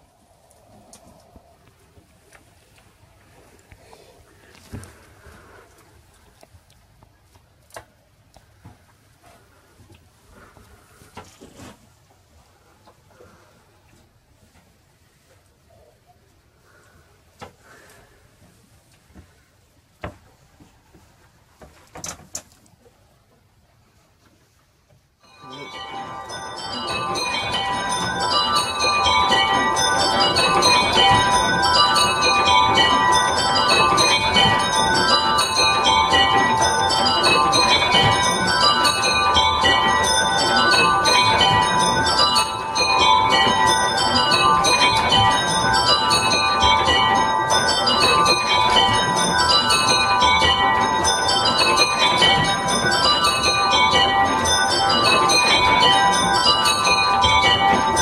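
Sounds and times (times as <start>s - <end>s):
small tower bells ringing: 25.2s - 58.0s.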